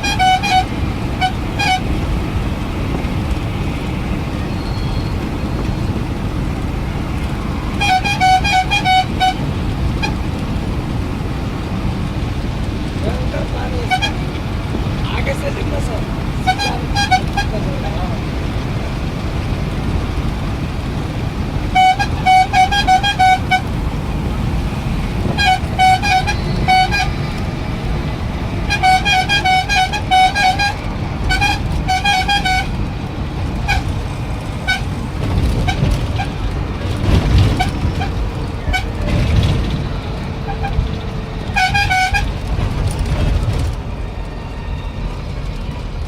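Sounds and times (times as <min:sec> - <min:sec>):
vehicle horn stuttering beeps: 0:00.0 - 0:02.0, 0:04.4 - 0:06.0, 0:07.7 - 0:10.2, 0:16.4 - 0:17.9, 0:21.7 - 0:23.7, 0:25.2 - 0:27.2, 0:28.7 - 0:32.7, 0:41.5 - 0:42.3
engine and traffic rumble: 0:00.0 - 0:46.0.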